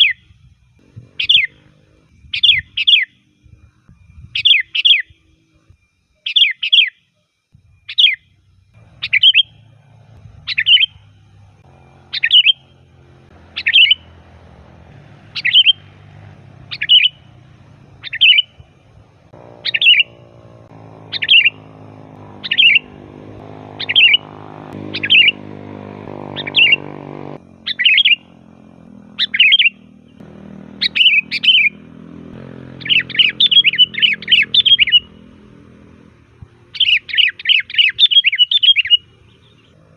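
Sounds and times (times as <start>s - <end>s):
bird chirping phrases: 0.0s - 5.3s, 6.2s - 7.1s, 7.8s - 39.9s.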